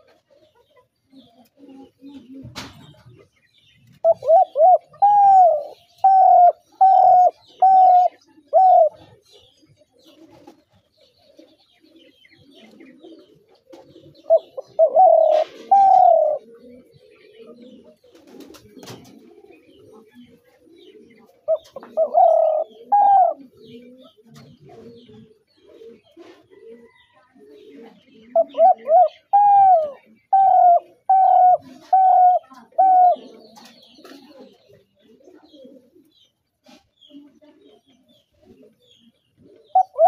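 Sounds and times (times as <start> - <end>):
dove cooing: 0.0 - 3.3, 3.9 - 40.0
faint small-bird chirps: 31.7 - 40.0.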